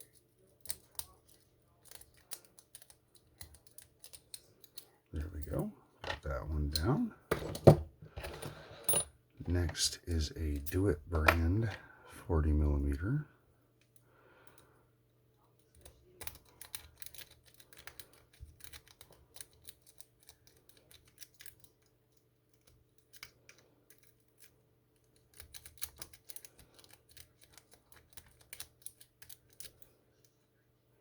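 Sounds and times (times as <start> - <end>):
lock pick clicking and scraping: 0.0 - 4.9, 15.7 - 21.9, 22.5 - 29.9.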